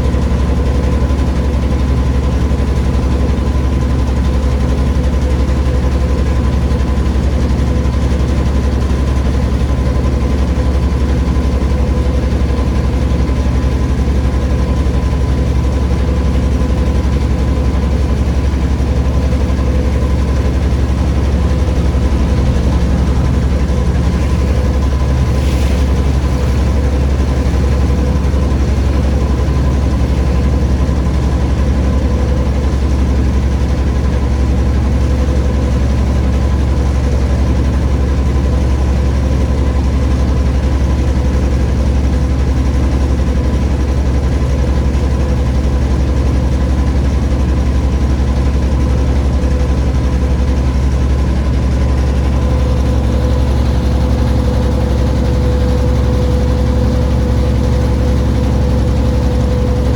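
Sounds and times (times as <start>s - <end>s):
low engine drone: 0.0s - 59.9s
faint rushing sound: 19.6s - 28.7s.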